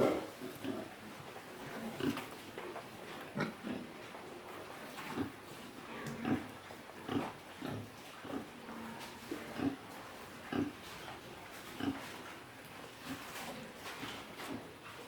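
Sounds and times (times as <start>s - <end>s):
pigs grunting: 0.0s - 1.0s, 1.6s - 2.3s, 3.3s - 4.0s, 5.0s - 10.8s, 11.7s - 12.1s.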